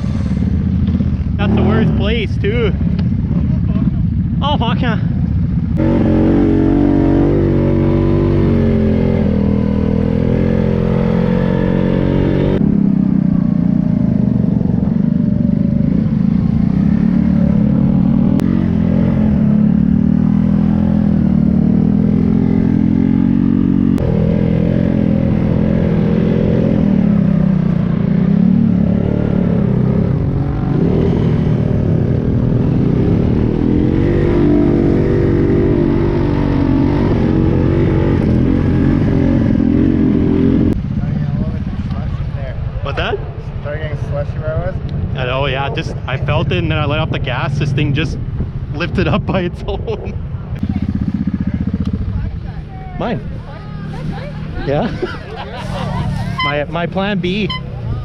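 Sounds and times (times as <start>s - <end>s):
atv engine revving: 0.0s - 3.6s, 4.2s - 58.0s.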